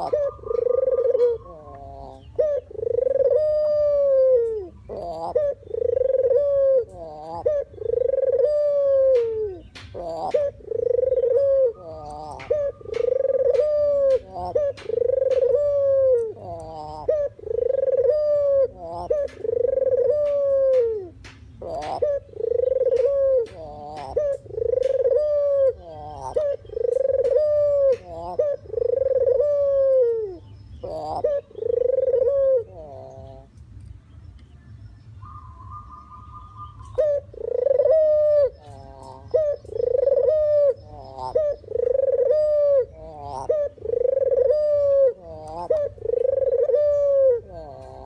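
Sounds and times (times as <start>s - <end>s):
dove cooing: 0.0s - 33.6s, 35.2s - 48.0s
faint high chirps and clicks: 33.5s - 34.7s, 35.7s - 37.1s.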